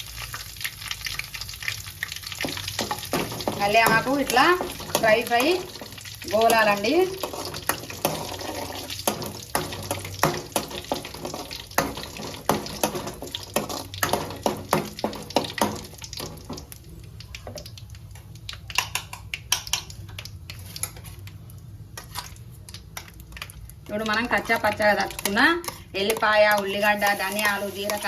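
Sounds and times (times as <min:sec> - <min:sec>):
leaves sizzling in hot oil: 0:00.0 - 0:28.0.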